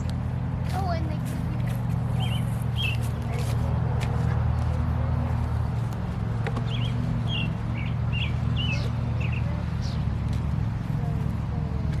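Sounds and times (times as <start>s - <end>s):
small songbird chirping: 2.1s - 3.2s, 6.6s - 10.2s.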